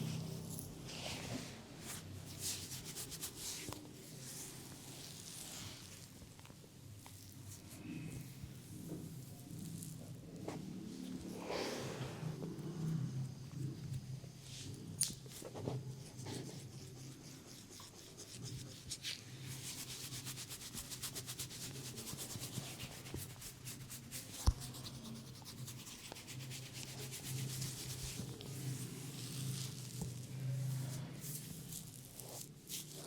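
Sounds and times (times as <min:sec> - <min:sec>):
hands rubbing scalp and hair: 0:01.0 - 0:05.8, 0:15.6 - 0:33.0.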